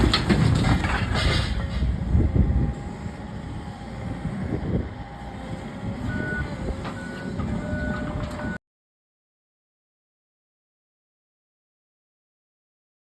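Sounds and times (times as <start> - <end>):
heavy machinery engine rumble: 0.0 - 8.6.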